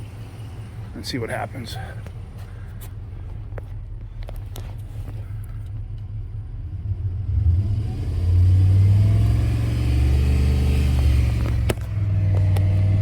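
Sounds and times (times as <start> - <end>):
engine idling and revving: 0.0 - 13.0.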